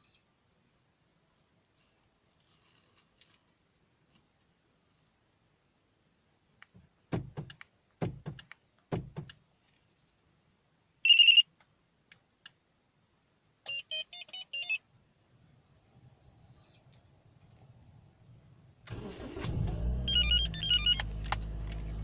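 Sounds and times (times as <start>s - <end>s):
loud beep: 11.1s - 11.4s.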